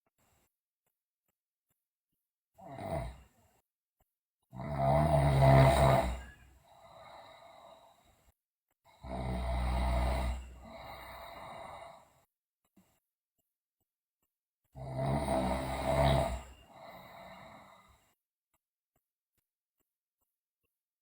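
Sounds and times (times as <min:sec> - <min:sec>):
girl snoring loudly: 0:02.6 - 0:03.2, 0:04.6 - 0:07.7, 0:09.0 - 0:12.1, 0:14.8 - 0:17.9.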